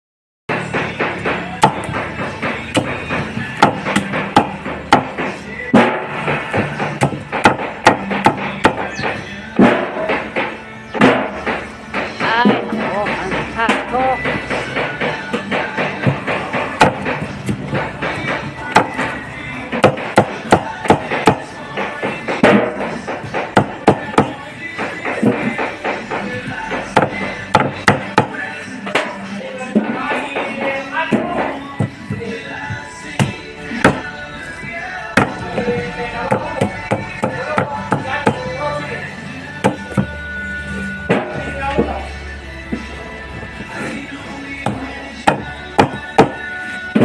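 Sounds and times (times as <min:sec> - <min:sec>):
background music: 0:00.5 - 0:47.0.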